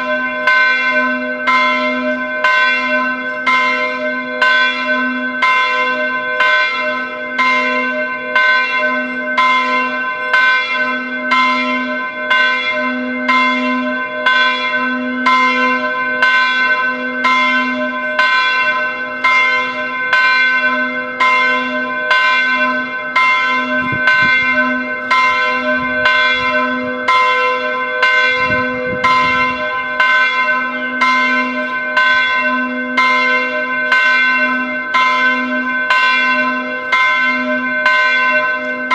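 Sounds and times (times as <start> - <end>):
church bells pealing: 0.0 - 38.9.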